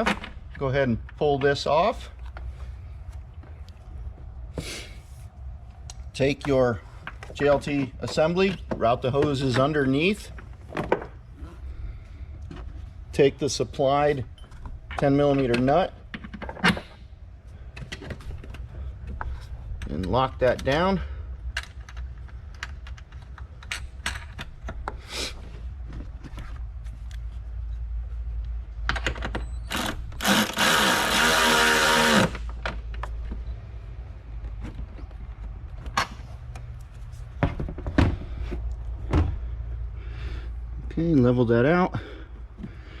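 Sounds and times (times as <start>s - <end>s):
parts being handled: 0.0s - 11.3s, 12.0s - 39.9s
steady low hum: 0.0s - 43.0s
hand ratchet clicking: 29.7s - 32.4s
noisy whirring burst: 29.7s - 32.7s.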